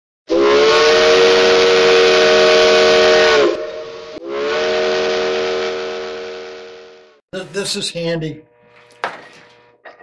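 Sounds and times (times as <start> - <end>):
steam whistle blasts: 0.3 - 7.2
steam hissing: 1.0 - 7.0.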